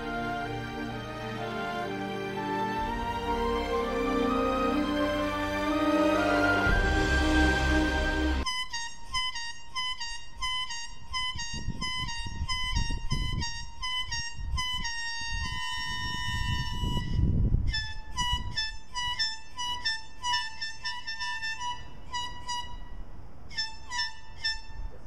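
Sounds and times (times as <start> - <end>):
low rumbling noise: 0.0 - 8.5
high bright background melody: 0.0 - 8.9.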